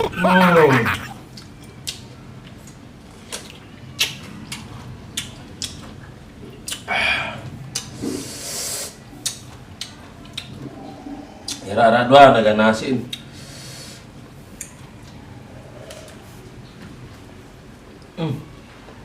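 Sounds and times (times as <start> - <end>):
mouth clicks and smacks chewing: 1.0 - 6.9, 7.7 - 8.0, 9.2 - 10.7.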